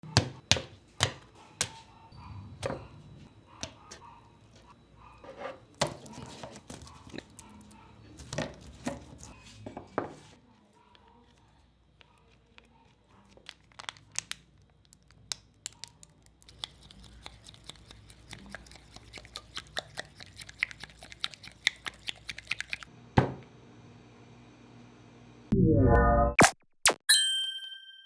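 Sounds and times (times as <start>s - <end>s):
crunching fried snacks: 12.2s - 22.9s.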